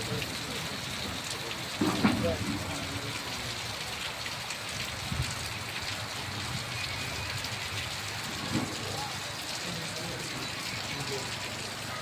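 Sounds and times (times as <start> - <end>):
heavy rain pouring: 0.0 - 12.0.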